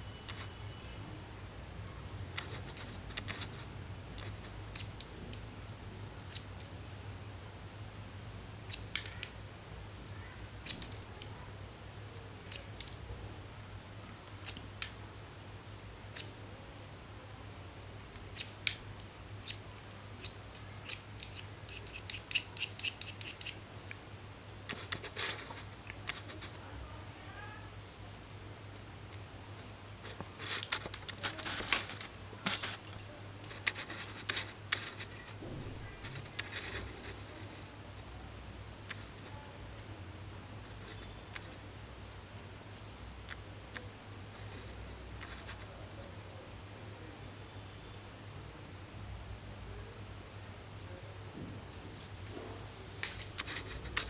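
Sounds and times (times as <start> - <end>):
pencil sharpening snips and clicks: 8.7 - 9.3, 20.2 - 23.6.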